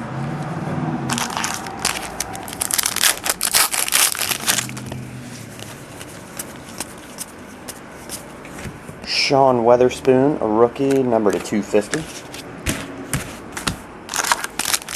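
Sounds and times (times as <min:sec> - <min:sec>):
plastic wrapper crinkling: 0:01.1 - 0:05.0, 0:14.1 - 0:14.9.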